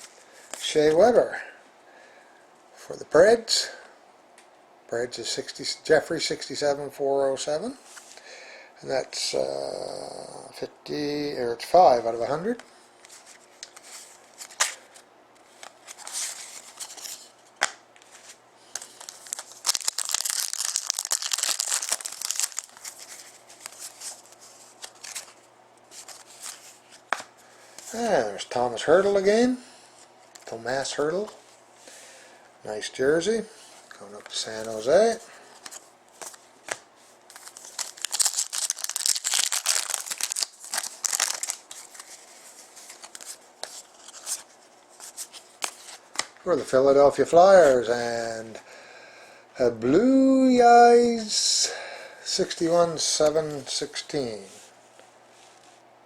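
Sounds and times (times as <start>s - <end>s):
wrapper crinkling and tearing: 18.8s - 25.4s, 37.3s - 44.4s.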